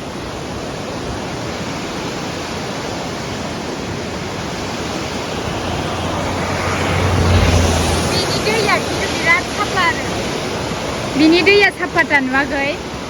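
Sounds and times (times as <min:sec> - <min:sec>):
fast-flowing water rushing: 0:00.0 - 0:13.0.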